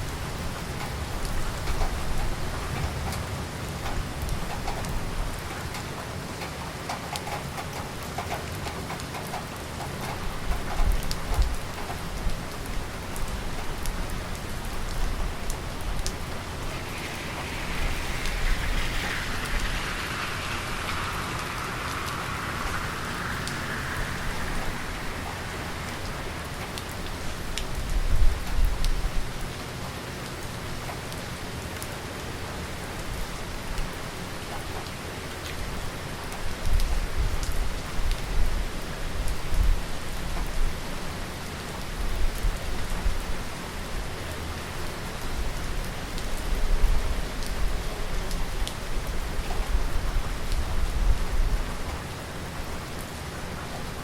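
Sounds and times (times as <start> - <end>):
heavy rain falling: 0.0 - 54.0
thunder rumbling: 10.4 - 29.3
broad rushing hiss: 11.2 - 28.6.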